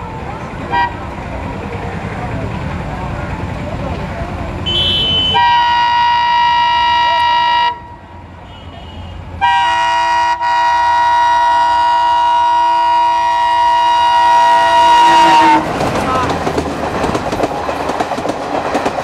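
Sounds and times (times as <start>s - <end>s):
train running rumble: 0.0s - 19.0s
diesel locomotive horn blasts: 0.7s - 1.0s, 4.6s - 15.8s.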